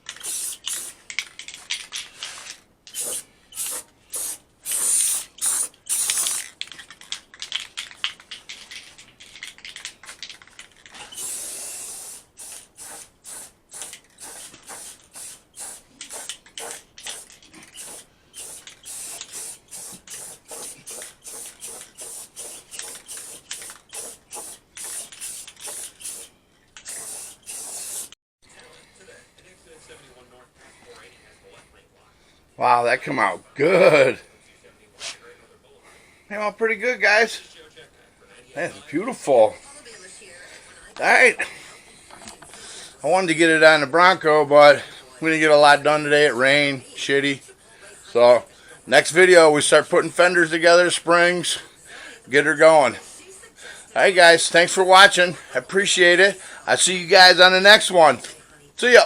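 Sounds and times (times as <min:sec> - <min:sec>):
spray paint hissing: 0:00.0 - 0:01.1, 0:02.4 - 0:06.6, 0:11.0 - 0:28.2.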